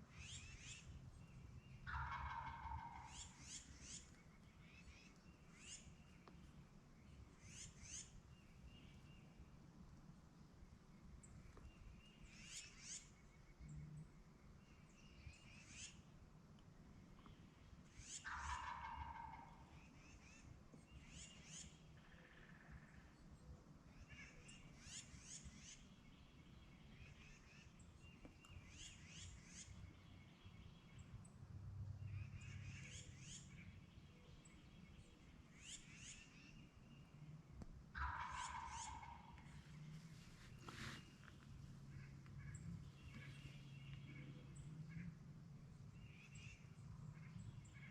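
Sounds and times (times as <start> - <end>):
turkey gobbling: 1.9 - 3.6, 18.1 - 19.7, 38.0 - 42.4
small birds chirping: 10.7 - 23.4, 24.0 - 47.9.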